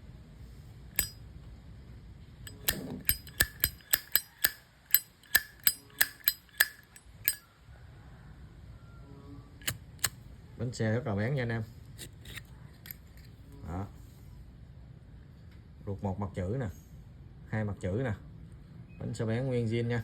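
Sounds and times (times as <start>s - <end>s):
lighter lid clicking open and shut: 1.0s - 1.2s, 2.5s - 7.4s, 9.6s - 10.2s.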